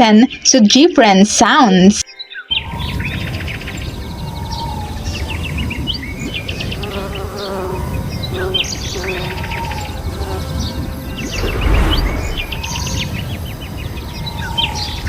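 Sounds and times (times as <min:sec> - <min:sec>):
small birds chirping: 0:02.0 - 0:15.0
bee buzzing: 0:06.8 - 0:12.7.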